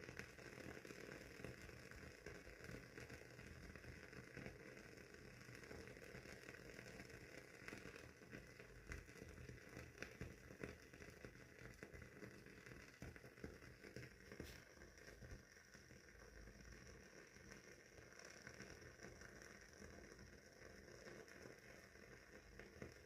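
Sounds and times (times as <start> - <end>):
wooden wick crackling: 11.8 - 23.0
soft hiss: 12.7 - 23.0.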